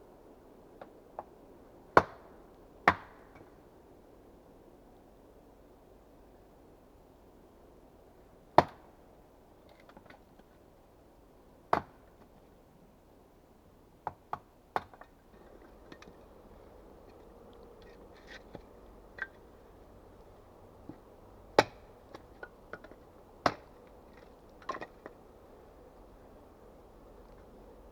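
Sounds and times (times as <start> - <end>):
axe chopping into wood: 21.6 - 22.2.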